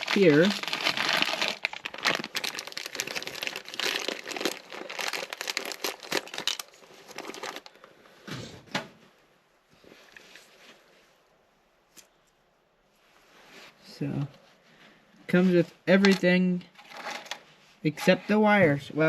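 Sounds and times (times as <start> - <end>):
packaging crinkling and rustling: 0.0 - 7.9, 16.8 - 17.5.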